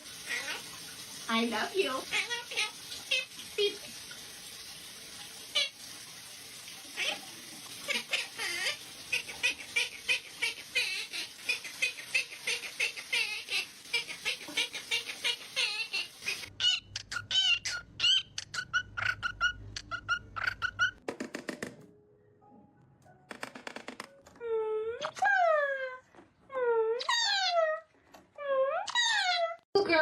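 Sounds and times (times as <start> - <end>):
parrot chirping: 2.0 - 3.3, 7.9 - 21.0, 27.0 - 27.8, 28.7 - 29.5.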